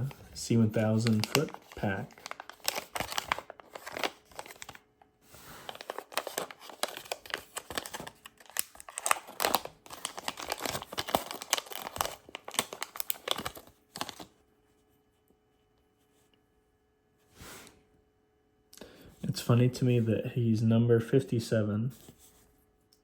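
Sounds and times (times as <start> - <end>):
plastic bag crinkling and tearing: 0.0 - 4.8, 5.6 - 14.3.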